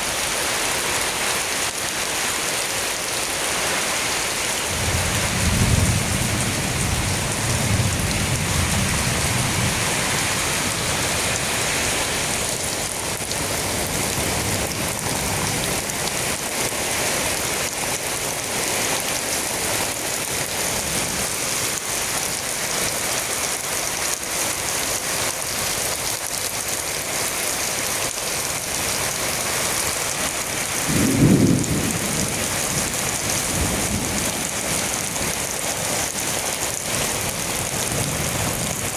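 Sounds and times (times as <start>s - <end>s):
heavy rain: 0.0s - 38.9s
thunder rumbling: 4.7s - 11.8s, 30.9s - 35.0s.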